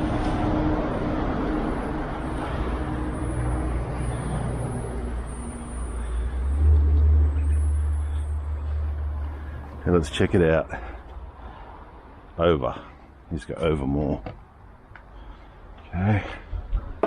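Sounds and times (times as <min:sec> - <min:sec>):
road traffic passing: 0:00.0 - 0:17.0.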